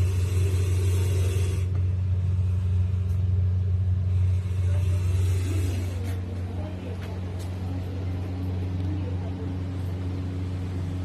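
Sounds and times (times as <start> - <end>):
light hiss: 0.0 - 6.5
steady low hum: 0.0 - 11.0.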